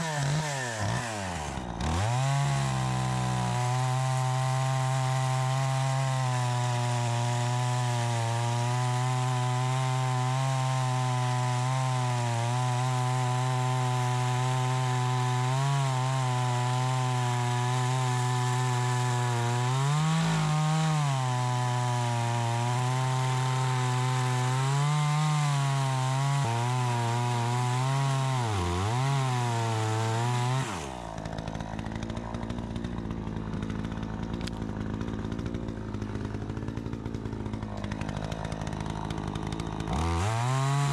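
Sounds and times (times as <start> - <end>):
chainsaw running at high revs: 0.0 - 40.9.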